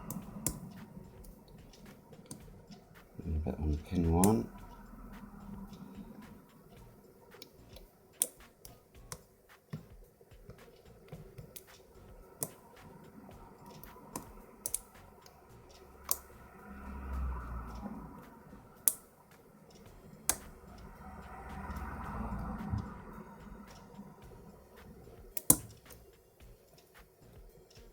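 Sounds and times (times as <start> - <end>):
low handling rumble: 0.0 - 7.9, 10.8 - 26.6
lock pick metallic clicks: 13.6 - 16.3, 18.8 - 19.1, 25.1 - 27.9.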